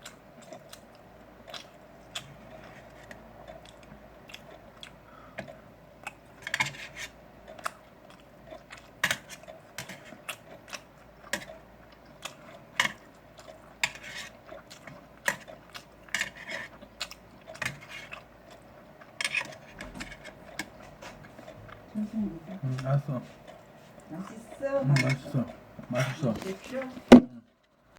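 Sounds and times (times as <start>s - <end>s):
utensils clinking against dishes: 24.8s - 26.9s.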